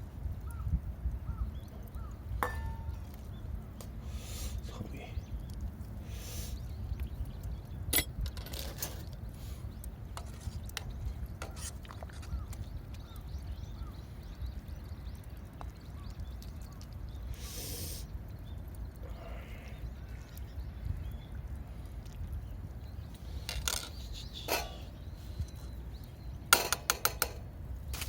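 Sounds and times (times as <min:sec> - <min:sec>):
campfire crackling and popping: 0:00.0 - 0:28.0
hissing rustles: 0:16.4 - 0:18.3, 0:23.0 - 0:26.1.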